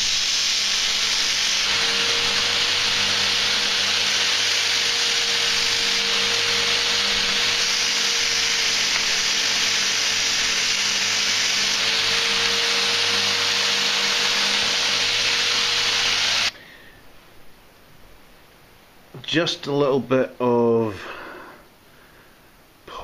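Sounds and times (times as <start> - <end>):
electric power tool buffing: 0.0 - 16.6.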